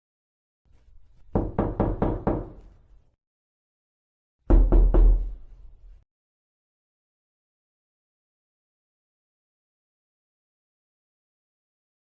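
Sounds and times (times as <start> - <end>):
knocking on a door: 1.3 - 2.6, 4.5 - 5.4.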